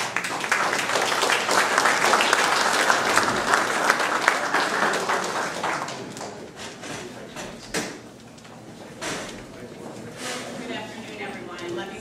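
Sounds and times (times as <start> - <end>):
audience applauding: 0.0 - 6.5.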